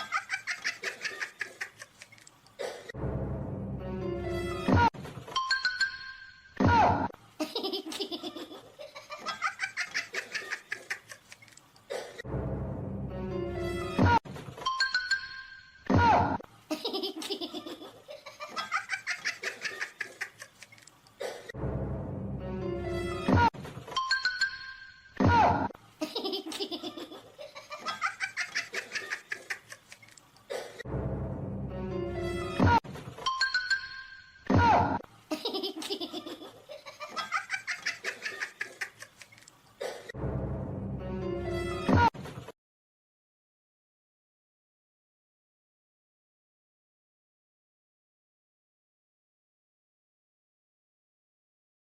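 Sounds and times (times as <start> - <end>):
laughter in quick bursts: 0.0 - 3.0, 7.4 - 12.2, 16.7 - 21.6, 26.0 - 30.9, 35.3 - 40.2
music: 3.0 - 5.7, 12.2 - 14.2, 21.6 - 24.3, 30.9 - 32.8, 40.2 - 42.1.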